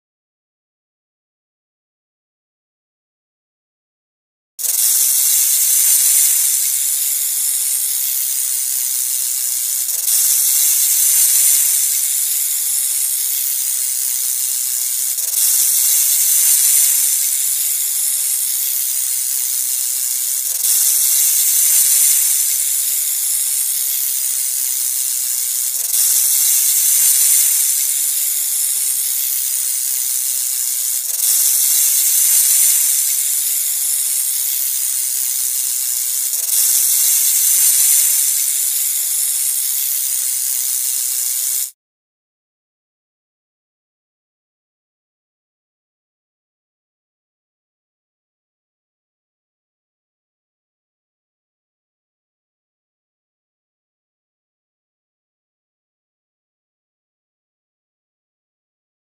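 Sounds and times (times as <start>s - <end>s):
snake hissing: 4.6s - 41.7s.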